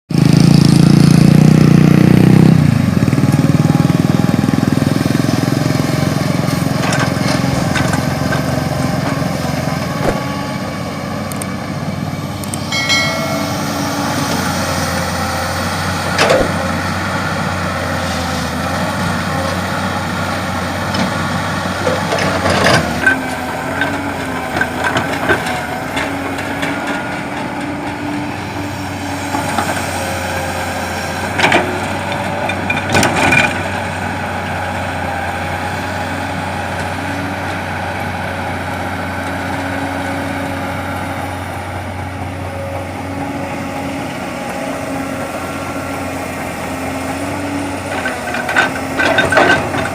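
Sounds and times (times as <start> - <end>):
heavy diesel engines running: 0.1 - 49.9
sharp knocks: 10.0 - 10.5.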